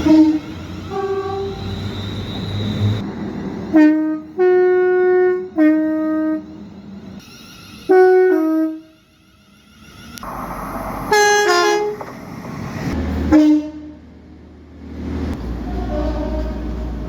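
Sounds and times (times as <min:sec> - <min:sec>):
train two-tone horn: 0:00.0 - 0:03.0, 0:03.7 - 0:06.5, 0:07.2 - 0:09.4, 0:11.1 - 0:12.0, 0:13.2 - 0:14.0, 0:15.6 - 0:17.0
train rumble: 0:00.0 - 0:17.0.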